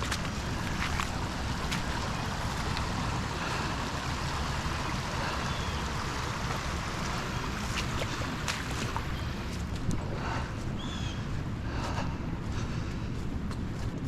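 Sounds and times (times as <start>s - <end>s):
water rushing through drain outlet: 0.0s - 9.8s.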